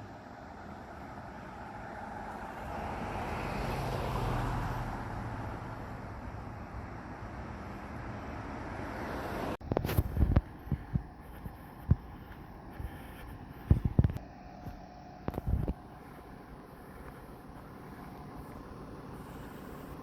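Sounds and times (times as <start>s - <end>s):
motor vehicle passing: 0.4s - 14.2s.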